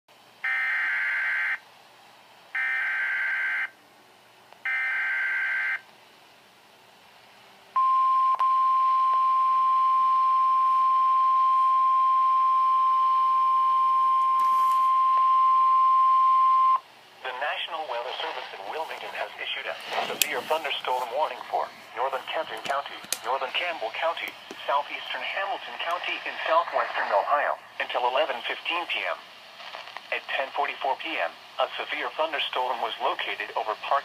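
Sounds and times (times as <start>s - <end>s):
loud steady alarm tone: 2.6s - 3.7s, 4.7s - 5.8s.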